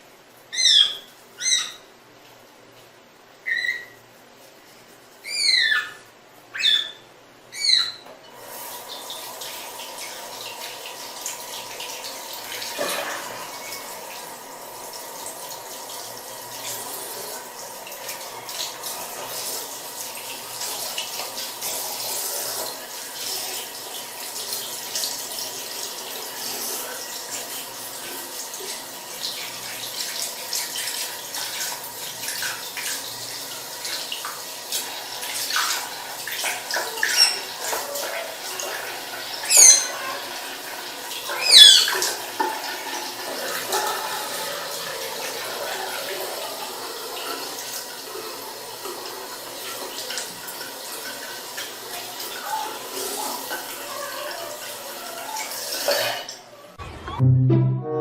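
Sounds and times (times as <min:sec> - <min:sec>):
water running: 0:00.0 - 0:56.8
high-pitched falling call: 0:56.8 - 0:58.0.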